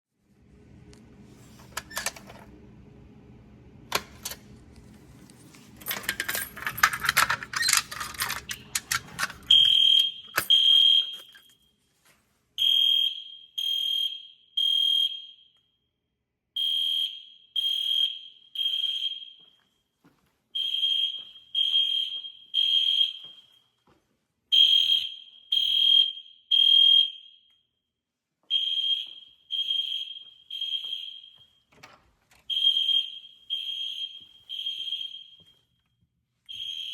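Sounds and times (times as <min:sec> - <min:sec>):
fire alarm horn blasts: 0:09.4 - 0:11.8, 0:12.6 - 0:15.9, 0:16.5 - 0:19.9, 0:20.6 - 0:23.8, 0:24.5 - 0:27.8, 0:28.5 - 0:31.7, 0:32.5 - 0:35.9, 0:36.5 - 0:36.9.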